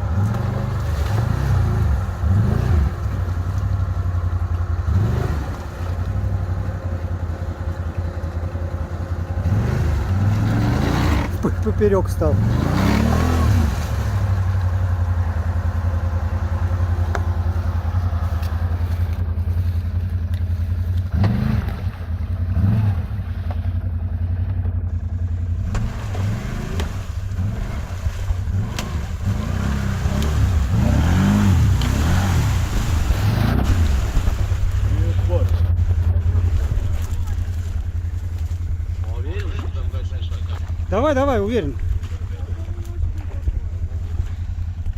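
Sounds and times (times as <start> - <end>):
atv engine revving: 0.0 - 44.9.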